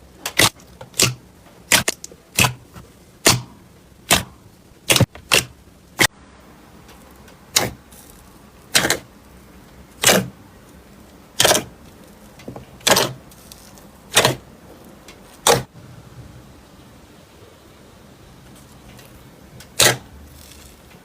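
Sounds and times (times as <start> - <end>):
slime squishing: 0.3 - 6.1, 7.0 - 15.7, 18.4 - 21.0
soft crackles: 6.8 - 15.5, 16.2 - 21.0.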